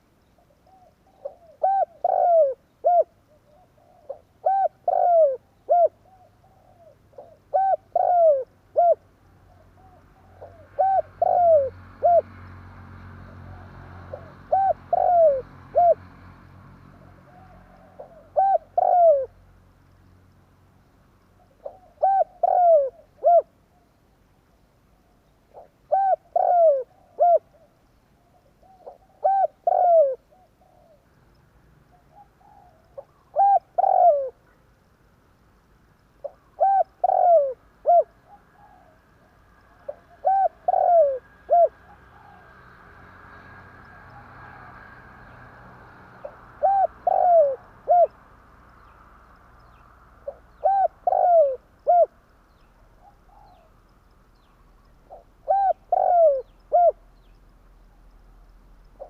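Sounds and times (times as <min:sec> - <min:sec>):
dove cooing: 0:00.4 - 0:12.4, 0:13.3 - 0:16.2, 0:16.9 - 0:19.4, 0:21.4 - 0:23.8, 0:25.0 - 0:31.1, 0:31.9 - 0:34.6, 0:36.2 - 0:42.8, 0:46.2 - 0:48.2, 0:50.2 - 0:52.2, 0:52.9 - 0:53.8, 0:54.9 - 0:57.1.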